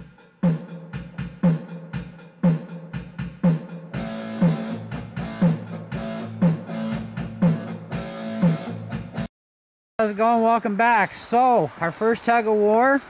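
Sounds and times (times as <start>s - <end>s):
steady drum beat: 0.0s - 9.3s
sustained chords: 0.0s - 9.3s.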